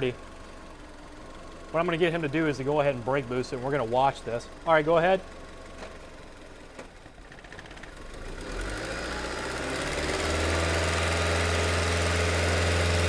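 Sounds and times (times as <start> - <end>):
car engine revving under load: 8.3 - 13.0.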